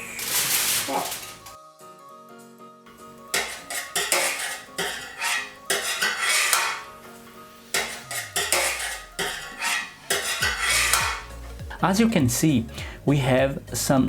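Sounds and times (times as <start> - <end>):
metal utensils scraping a roasting tray: 0.0 - 1.6, 3.3 - 11.6.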